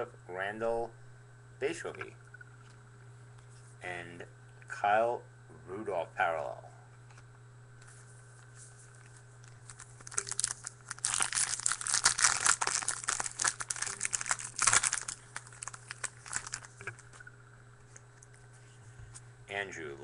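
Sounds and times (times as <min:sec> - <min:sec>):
foil wrapper crinkling: 0:09.4 - 0:17.3.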